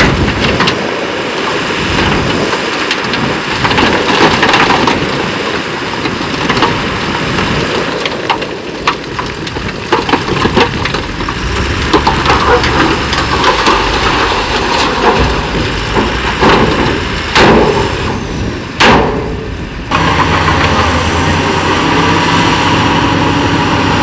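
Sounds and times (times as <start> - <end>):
rocks clattering and tumbling: 0.0 - 21.0
steady rushing noise: 10.2 - 24.0.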